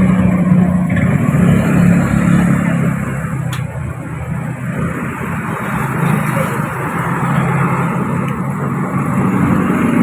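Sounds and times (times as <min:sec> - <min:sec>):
street traffic: 0:00.0 - 0:10.0.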